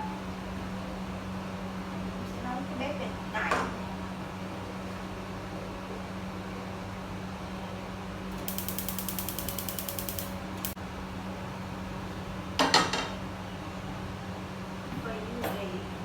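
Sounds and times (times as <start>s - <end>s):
low fan hum: 8.0s - 14.0s
fast clicks: 8.3s - 10.8s
sharp click: 8.3s - 10.8s.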